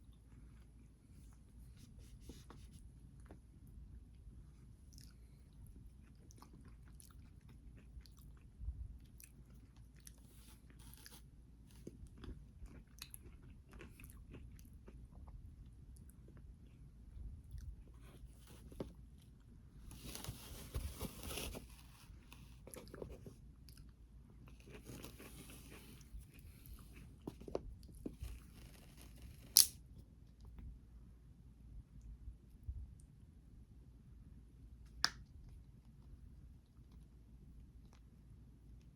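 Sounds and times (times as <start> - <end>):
person chewing crunchy food: 4.9 - 15.4.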